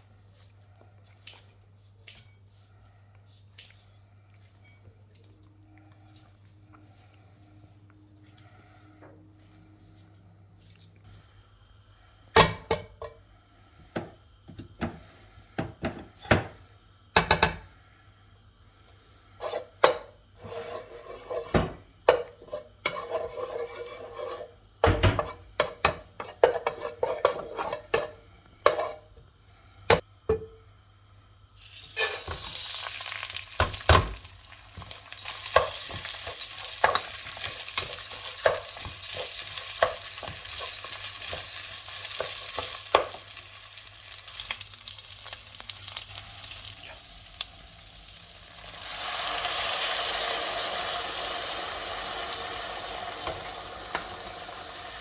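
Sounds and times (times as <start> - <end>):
food sizzling in hot fat: 9.4 - 55.0
utensils knocking against a pan: 17.2 - 17.6.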